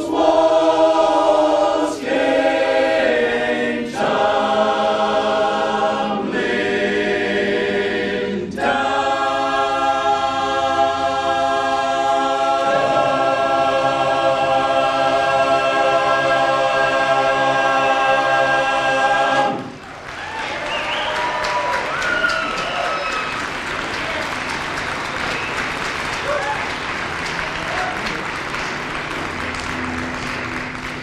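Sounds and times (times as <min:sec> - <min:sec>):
barbershop chorus singing a cappella: 0:00.0 - 0:19.8.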